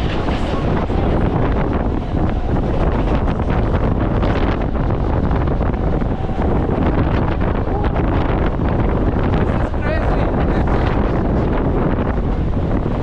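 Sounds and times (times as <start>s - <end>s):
train running and clattering: 0.0s - 13.0s
wind buffeting microphone: 0.0s - 13.0s.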